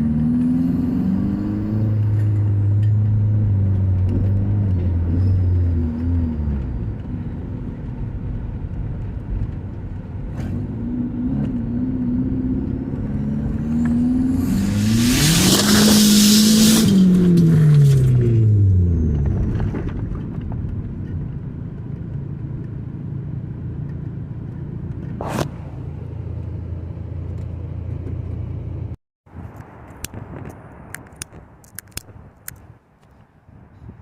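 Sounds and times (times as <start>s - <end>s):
vehicle engines running: 1.8s - 29.0s
vehicle passing close by: 10.4s - 19.0s.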